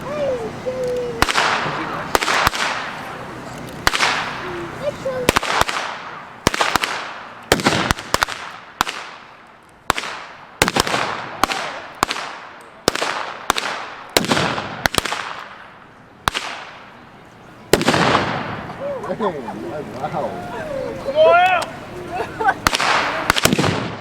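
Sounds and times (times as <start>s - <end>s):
gunshots with echo: 1.2s - 2.9s, 22.7s - 24.0s.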